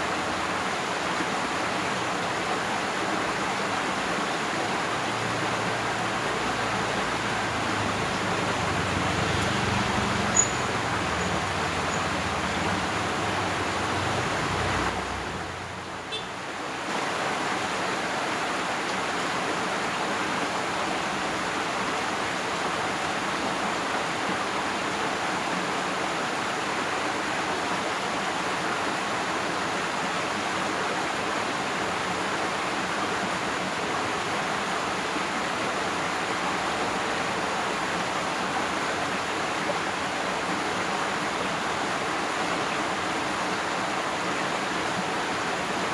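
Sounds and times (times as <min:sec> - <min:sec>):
water rushing in a ditch: 0:00.0 - 0:45.9.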